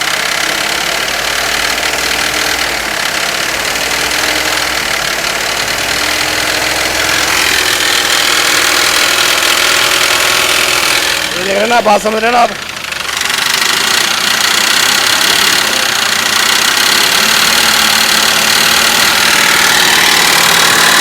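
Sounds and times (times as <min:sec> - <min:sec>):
diesel engine knocking: 0:00.0 - 0:21.0.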